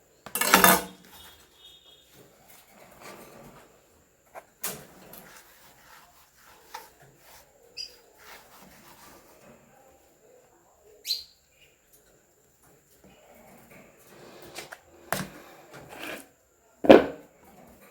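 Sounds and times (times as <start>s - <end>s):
kitchenware clicks and knocks: 0.3s - 1.1s, 16.8s - 17.3s.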